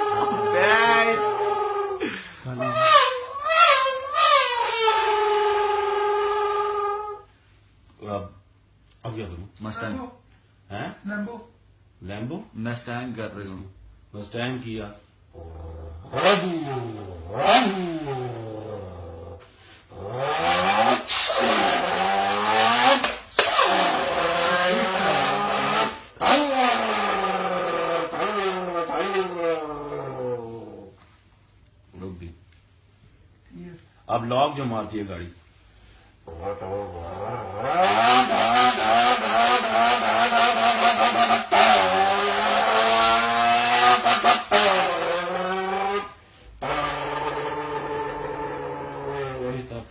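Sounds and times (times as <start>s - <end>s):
man imitating car engine: 0.0s - 7.0s, 15.3s - 30.9s, 36.2s - 49.9s.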